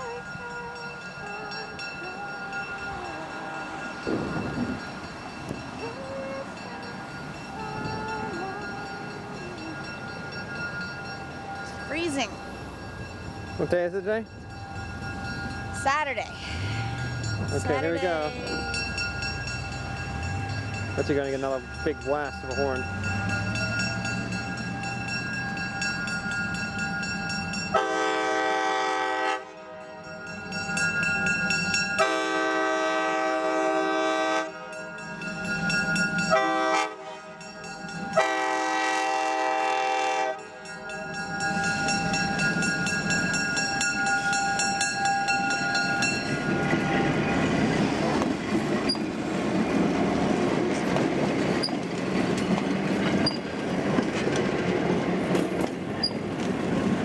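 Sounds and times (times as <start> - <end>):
train air horn blasts: 27.7 - 30.0, 32.0 - 34.8, 36.3 - 37.4, 38.2 - 40.5
train wheels clattering on rails: 40.5 - 57.0.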